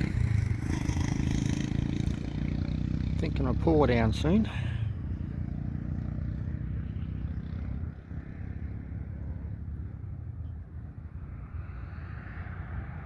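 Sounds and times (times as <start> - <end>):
vehicle engine rumbling: 0.0 - 13.0.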